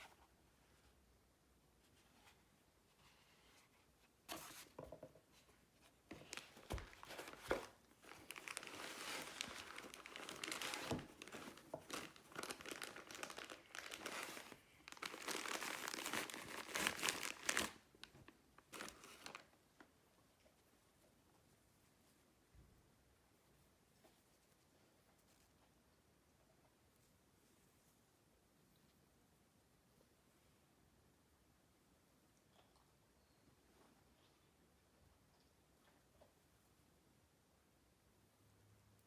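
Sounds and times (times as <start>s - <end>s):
packaging crinkling and tearing: 6.2s - 19.5s.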